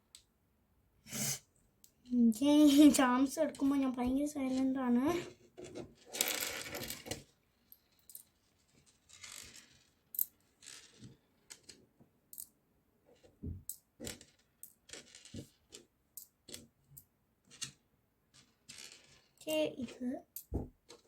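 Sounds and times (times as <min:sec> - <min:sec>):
light clicks and taps of beads: 0:07.7 - 0:08.3.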